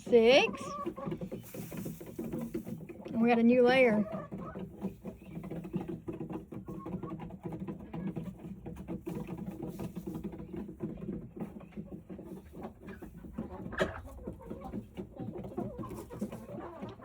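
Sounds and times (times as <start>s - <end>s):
rustling in nest bedding: 0.0s - 6.2s.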